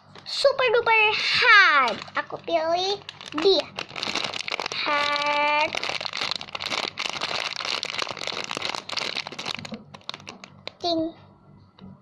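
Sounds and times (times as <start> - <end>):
foam toy crinkling when squeezed: 1.6 - 10.8.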